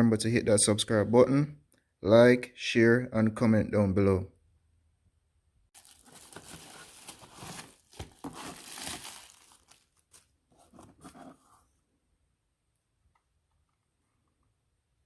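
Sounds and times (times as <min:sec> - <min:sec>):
rustling and crinkling handling noise: 0:05.8 - 0:11.7.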